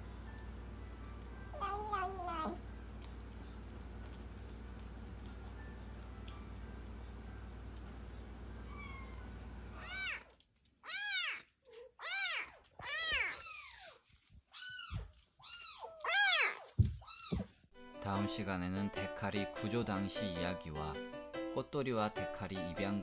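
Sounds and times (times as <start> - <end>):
steady low hum: 0.0 - 9.9
kitten meowing: 1.6 - 2.6, 8.7 - 9.2, 9.8 - 10.3, 12.0 - 14.0, 14.6 - 17.4.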